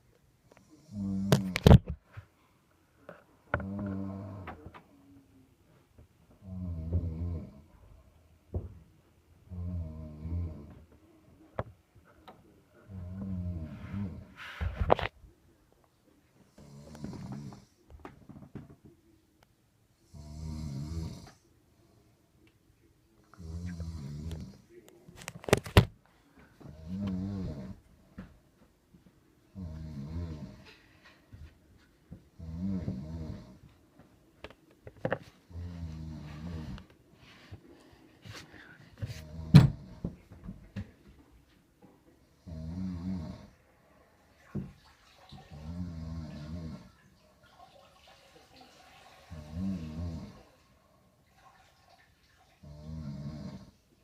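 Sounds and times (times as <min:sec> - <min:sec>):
person snoring: 0:00.6 - 0:01.7, 0:03.6 - 0:04.6, 0:12.9 - 0:14.4, 0:20.0 - 0:21.4, 0:23.4 - 0:24.6, 0:26.7 - 0:27.8, 0:29.6 - 0:30.7, 0:32.4 - 0:33.6, 0:35.5 - 0:36.9, 0:42.4 - 0:43.6, 0:45.5 - 0:46.9, 0:49.3 - 0:50.6, 0:52.6 - 0:53.8
person snoring with snort: 0:35.5 - 0:36.9, 0:42.4 - 0:43.6, 0:49.3 - 0:50.5, 0:52.6 - 0:53.8.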